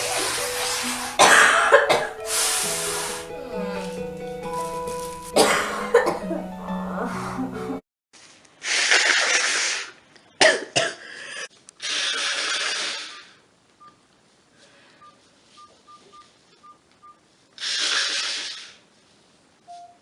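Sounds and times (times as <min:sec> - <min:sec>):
woman blowing her nose: 0:00.0 - 0:04.6, 0:08.6 - 0:10.0, 0:11.1 - 0:13.4, 0:17.6 - 0:18.8.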